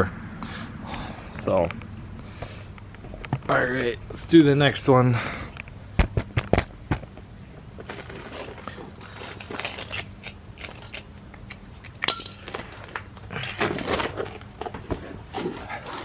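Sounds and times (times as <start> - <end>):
metal screws and nuts clinking: 7.9 - 10.0, 12.0 - 12.6.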